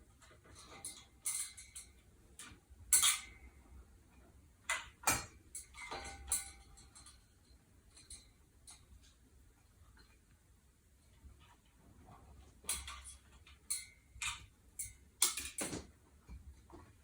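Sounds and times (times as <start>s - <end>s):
small hardware clicking and clinking: 0.2s - 3.6s, 4.7s - 9.2s, 12.6s - 16.4s.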